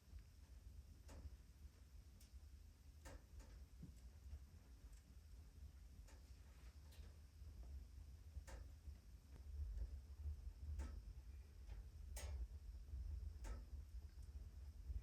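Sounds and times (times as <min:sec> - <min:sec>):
low steady rumble: 0:00.0 - 0:15.0
faint sharp clicks: 0:08.4 - 0:08.7, 0:11.7 - 0:12.4.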